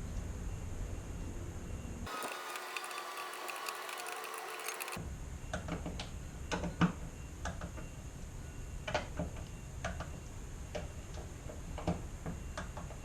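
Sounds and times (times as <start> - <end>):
torque wrench ratchet clicks: 2.1 - 5.0.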